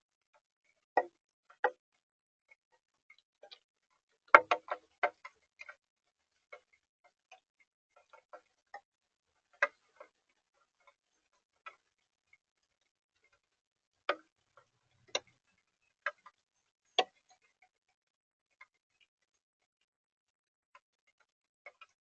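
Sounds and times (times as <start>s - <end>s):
raindrops dripping: 2.6s - 19.2s.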